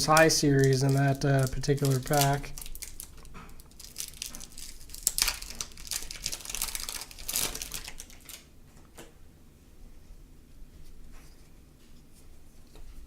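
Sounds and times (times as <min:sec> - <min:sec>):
card pack wrapper crinkling: 0:00.0 - 0:08.5.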